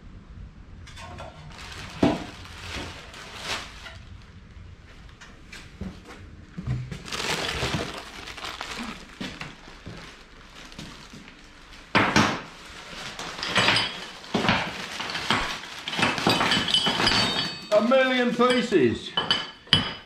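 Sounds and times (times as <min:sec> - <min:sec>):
metal parts clinking and clattering: 0:13.0 - 0:20.0.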